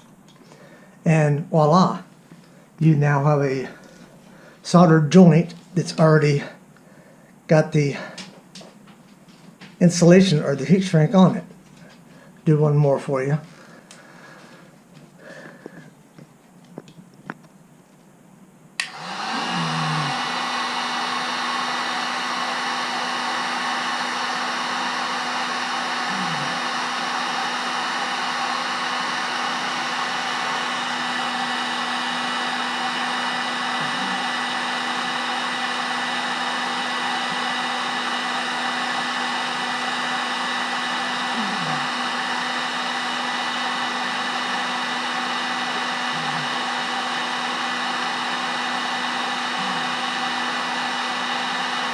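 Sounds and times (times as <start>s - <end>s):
heat gun switch click: 18.8s - 19.0s
heat gun blower whoosh: 18.8s - 51.9s.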